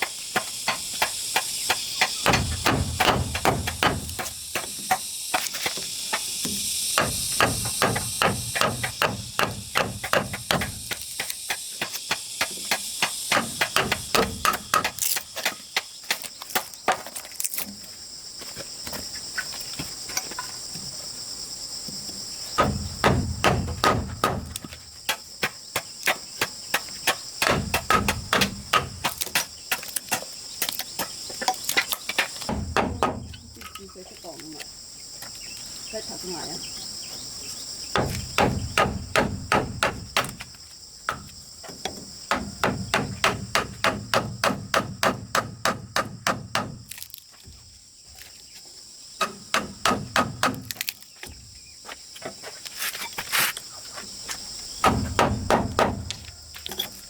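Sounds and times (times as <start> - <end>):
hand tool striking: 0.0 - 16.8
high insect drone: 0.0 - 57.0.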